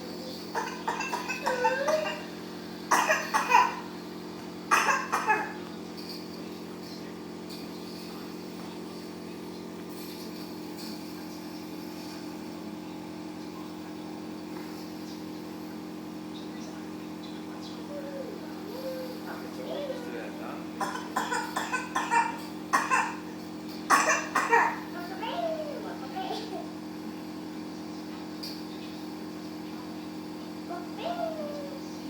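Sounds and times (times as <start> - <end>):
nebulizer compressor humming: 0.0 - 32.0
child coughing: 0.5 - 3.9, 4.7 - 5.6, 20.8 - 23.3, 23.9 - 26.7.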